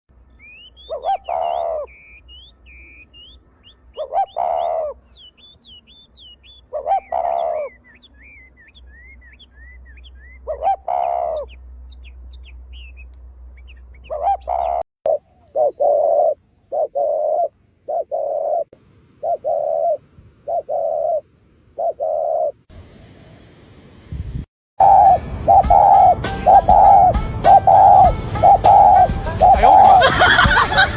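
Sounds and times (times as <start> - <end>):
small birds twittering: 0.2 - 22.7, 24.8 - 30.6
doves cooing: 0.8 - 2.0, 3.9 - 5.0, 6.5 - 9.1, 10.3 - 11.6, 14.0 - 22.6, 24.8 - 30.9.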